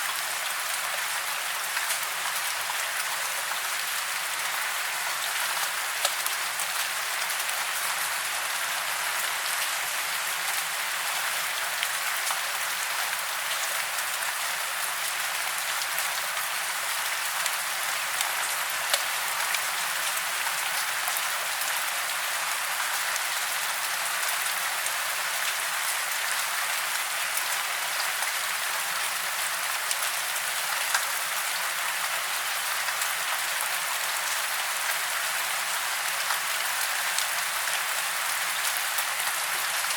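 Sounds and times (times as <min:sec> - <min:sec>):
steady rain: 0:00.0 - 0:39.9
rain drops ticking: 0:00.1 - 0:08.2, 0:15.1 - 0:21.8.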